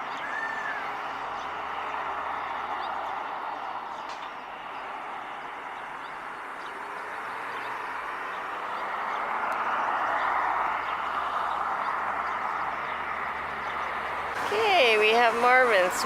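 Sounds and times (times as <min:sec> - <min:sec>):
small waterfall rushing: 0:14.2 - 0:16.0.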